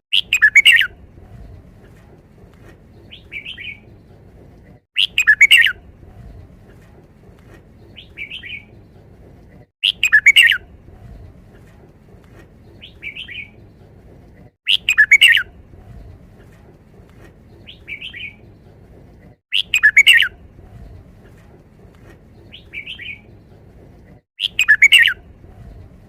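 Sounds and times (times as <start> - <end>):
bird whistled song: 0.1 - 1.0, 3.0 - 3.9, 5.0 - 5.9, 7.8 - 8.7, 9.8 - 10.7, 12.7 - 13.6, 14.7 - 15.6, 17.6 - 18.4, 19.5 - 20.9, 22.4 - 23.4, 24.4 - 25.8.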